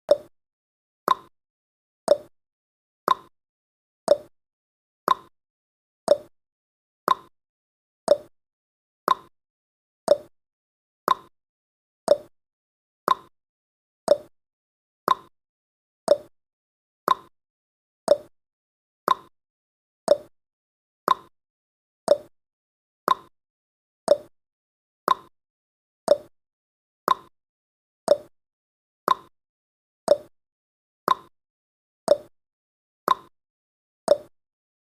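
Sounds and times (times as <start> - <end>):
clock tick-tock: 0.1 - 0.3, 1.1 - 1.3, 2.1 - 2.3, 3.1 - 3.3, 4.1 - 4.3, 5.1 - 5.3, 6.1 - 6.3, 7.1 - 7.3, 8.1 - 8.3, 9.1 - 9.3, 10.1 - 10.3, 11.1 - 11.3, 12.1 - 12.3, 13.1 - 13.3, 14.1 - 14.3, 15.1 - 15.3, 16.1 - 16.3, 17.1 - 17.3, 18.1 - 18.3, 19.1 - 19.3, 20.1 - 20.3, 21.1 - 21.3, 22.1 - 22.3, 23.1 - 23.3, 24.1 - 24.3, 25.1 - 25.3, 26.1 - 26.3, 27.1 - 27.3, 28.1 - 28.3, 29.1 - 29.3, 30.1 - 30.3, 31.1 - 31.3, 32.1 - 32.3, 33.1 - 33.3, 34.1 - 34.3.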